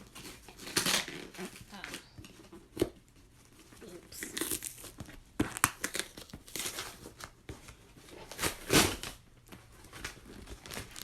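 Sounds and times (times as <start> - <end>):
packaging ripping: 0.0 - 2.1, 4.1 - 7.4, 8.3 - 9.2, 9.9 - 11.0
packaging crackling and rustling: 0.0 - 11.0.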